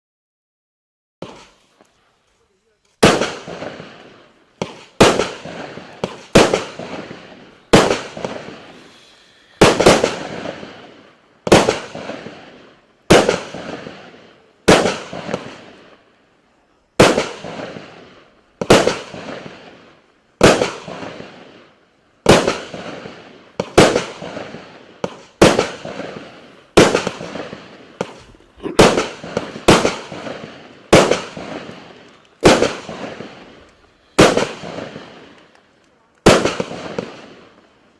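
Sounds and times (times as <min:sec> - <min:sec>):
fireworks cake shots banging: 0:01.2 - 0:01.9, 0:02.9 - 0:09.0, 0:09.6 - 0:10.8, 0:22.3 - 0:37.3.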